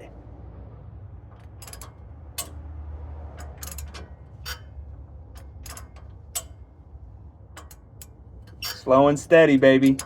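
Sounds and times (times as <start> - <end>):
hand ratchet clicking: 1.4 - 2.7, 3.3 - 6.6, 7.5 - 8.9, 9.7 - 10.0.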